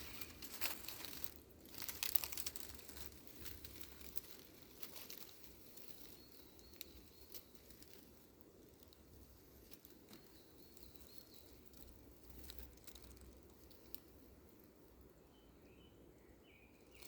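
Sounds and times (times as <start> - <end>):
dry leaves crackling: 0.0 - 15.2.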